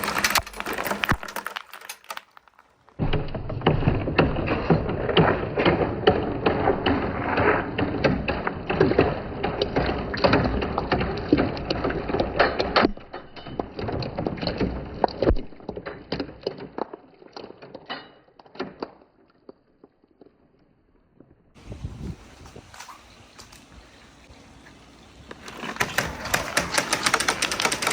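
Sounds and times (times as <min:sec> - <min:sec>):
balls clattering down wooden track: 0:00.0 - 0:19.5, 0:25.3 - 0:27.9.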